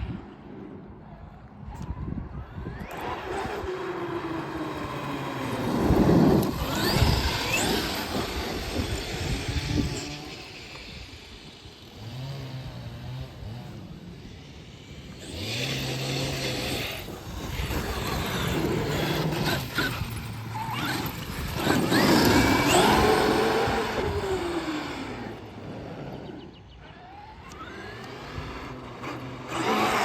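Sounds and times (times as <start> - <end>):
electric motor whine: 1.8 - 30.0.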